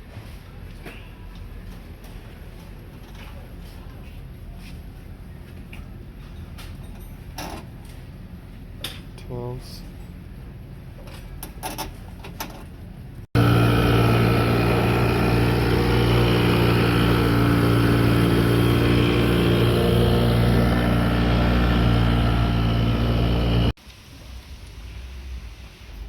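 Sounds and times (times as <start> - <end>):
motor running loud and steady: 13.4 - 23.8.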